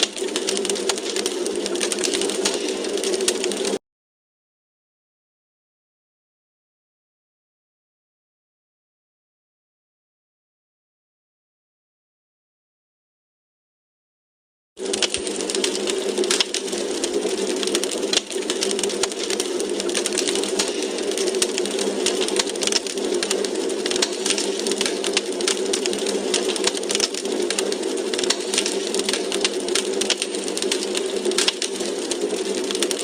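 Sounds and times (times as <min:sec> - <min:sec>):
wood fire crackling: 0:00.0 - 0:03.8, 0:14.8 - 0:33.0.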